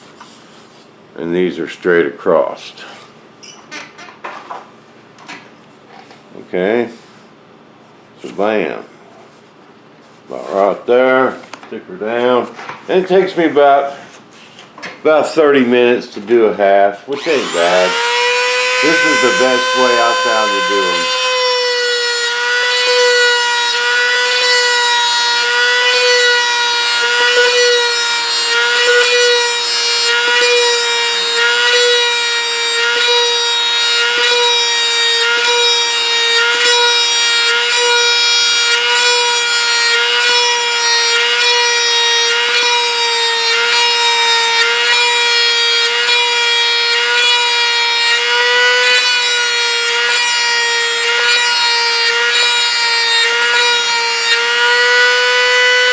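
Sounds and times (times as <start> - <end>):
rotary tool whining: 17.1 - 55.9.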